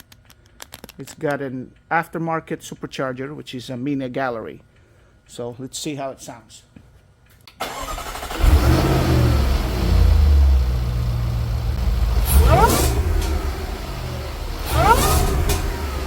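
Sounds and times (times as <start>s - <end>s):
car engine starting and idling: 7.6s - 16.0s
engine revving: 7.6s - 16.0s
supercharger whine: 7.8s - 16.0s.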